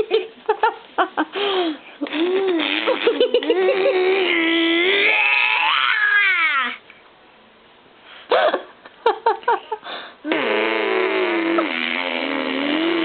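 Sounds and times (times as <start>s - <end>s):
person making silly vocal noises: 2.0s - 6.8s.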